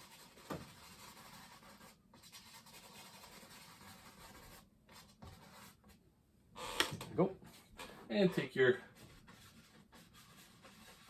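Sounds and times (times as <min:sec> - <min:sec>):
brush scratching on canvas: 0:00.0 - 0:05.9, 0:07.5 - 0:11.0.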